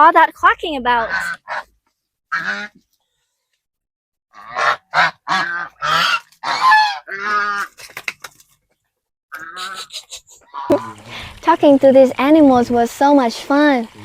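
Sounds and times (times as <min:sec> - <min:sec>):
goose honking: 0:01.0 - 0:01.7, 0:02.3 - 0:02.8, 0:04.4 - 0:07.7, 0:09.4 - 0:11.0.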